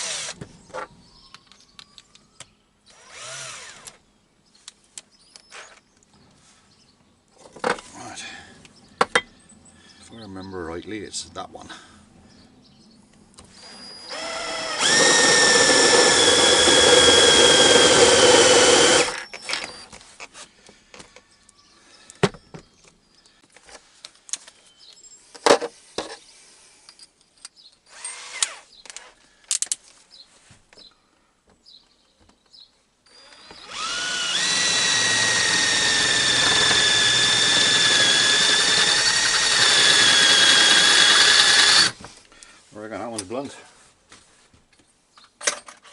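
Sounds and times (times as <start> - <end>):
electric drill whine: 0.0 - 0.4, 2.9 - 4.0, 13.4 - 19.9, 33.1 - 42.0.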